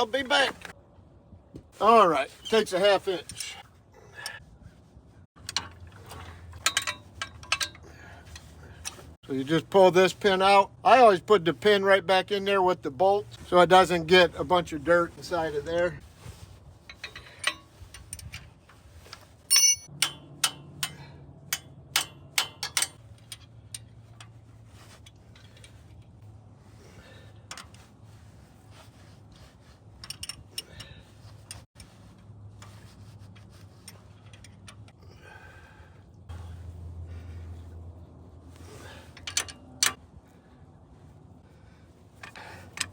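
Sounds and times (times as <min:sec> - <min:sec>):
metal clinking and knocking: 0:05.4 - 0:07.8, 0:19.5 - 0:20.9
ringing metal clank: 0:19.5 - 0:21.0.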